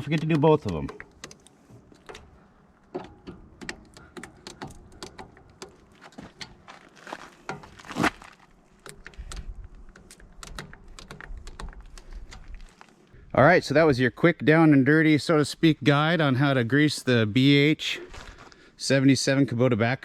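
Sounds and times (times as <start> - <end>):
grease gun metallic clicks: 0.0 - 6.6, 8.8 - 12.7.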